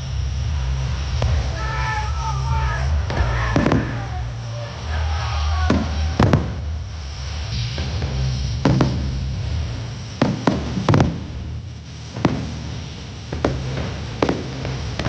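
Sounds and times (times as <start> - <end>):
firework shells bursting: 1.1 - 6.8, 10.2 - 11.4, 12.1 - 15.0.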